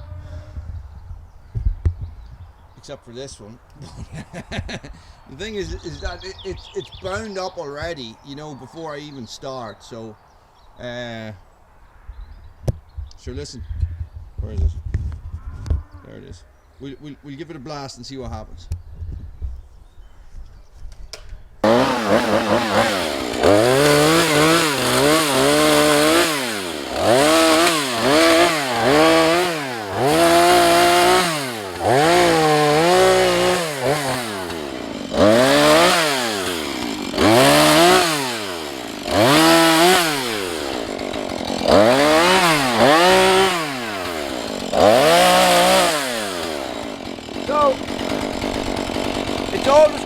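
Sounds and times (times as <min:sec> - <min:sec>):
chainsaw revving: 0:21.6 - 0:50.0.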